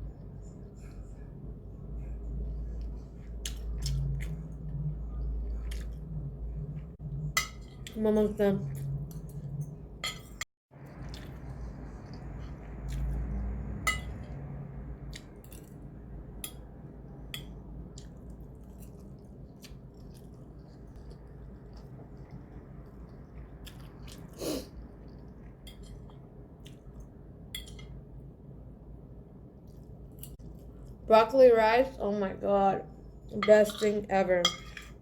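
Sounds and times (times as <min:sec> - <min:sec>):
person chewing food: 0:02.5 - 0:07.0, 0:10.8 - 0:14.4, 0:15.1 - 0:15.9, 0:17.4 - 0:28.0.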